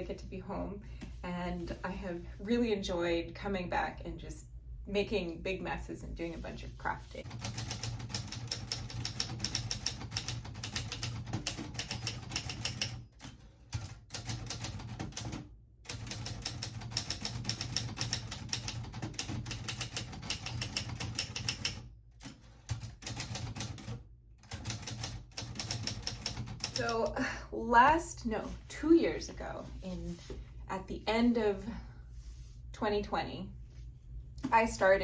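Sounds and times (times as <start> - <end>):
typewriter keystrokes clattering: 7.3 - 21.8.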